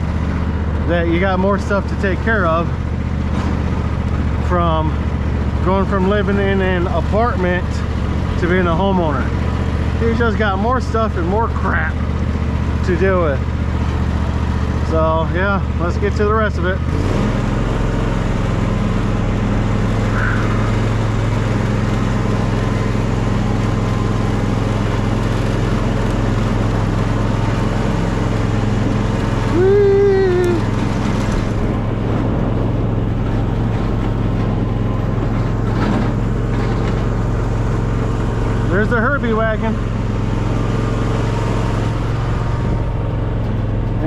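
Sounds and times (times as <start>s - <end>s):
vehicle engine humming: 0.0s - 44.0s
short pitched whine: 19.8s - 21.9s.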